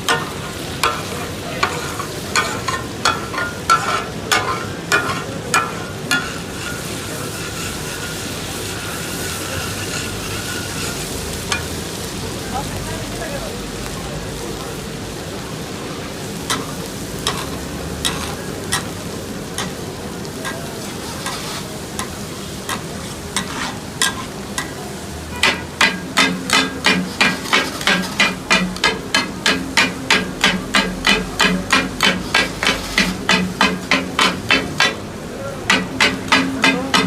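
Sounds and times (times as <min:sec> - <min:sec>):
metal spatulas striking griddle: 0:00.0 - 0:08.2, 0:09.9 - 0:11.7, 0:16.5 - 0:19.0, 0:19.6 - 0:19.8, 0:20.4 - 0:37.0
griddle ringing: 0:00.0 - 0:12.0, 0:16.0 - 0:37.0
food frying: 0:00.0 - 0:37.0.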